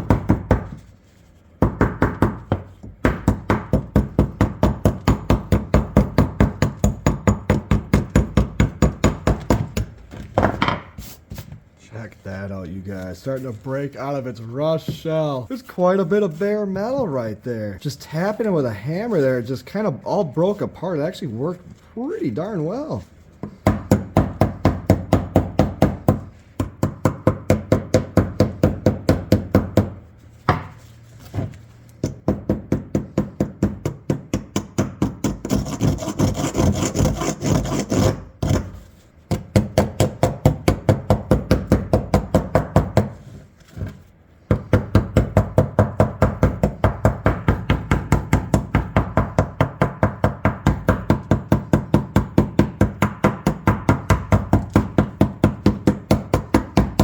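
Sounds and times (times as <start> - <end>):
scraping rasping sound: 35.4 - 39.0.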